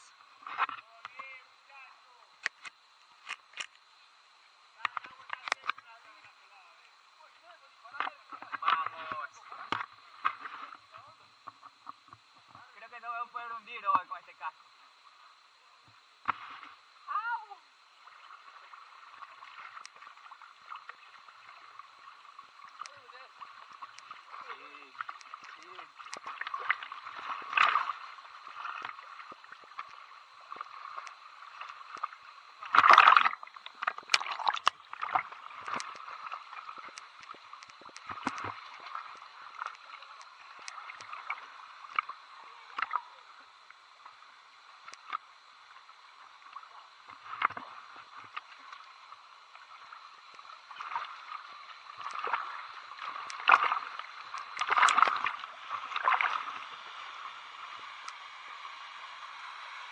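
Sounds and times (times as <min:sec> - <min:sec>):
small clicks: 0:02.4 - 0:03.8, 0:23.6 - 0:24.2, 0:25.0 - 0:26.5, 0:30.6 - 0:42.1
water gurgling and splashing: 0:04.6 - 0:59.9.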